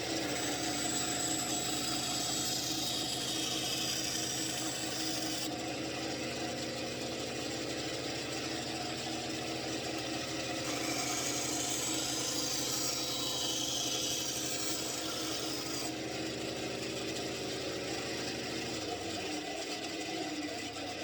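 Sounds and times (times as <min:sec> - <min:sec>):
electric power tool motor hum: 0:00.0 - 0:05.5, 0:08.2 - 0:20.0
tool hissing through material: 0:10.6 - 0:15.9.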